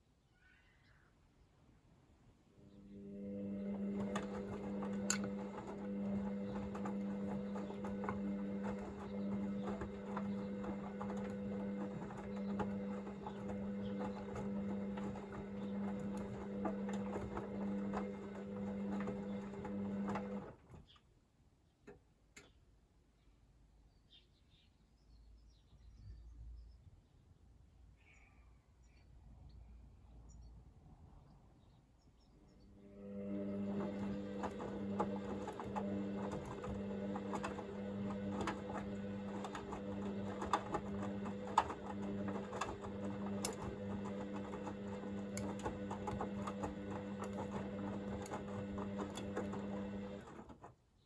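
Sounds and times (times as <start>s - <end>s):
washing machine drum motor hum: 3.0s - 20.8s, 33.0s - 50.7s.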